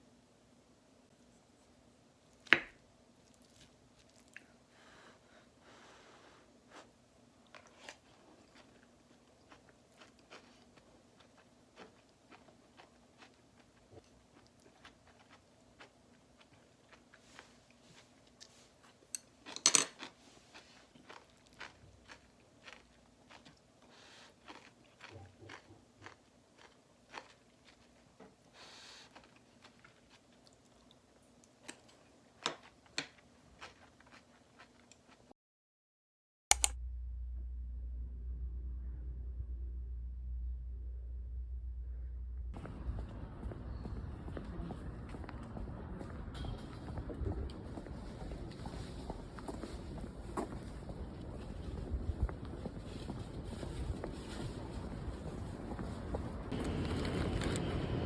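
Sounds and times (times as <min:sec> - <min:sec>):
person chewing crunchy food: 0:03.2 - 0:04.6, 0:06.8 - 0:35.2
sharp clicks: 0:36.5 - 0:36.8
small clicks: 0:36.5 - 0:36.8.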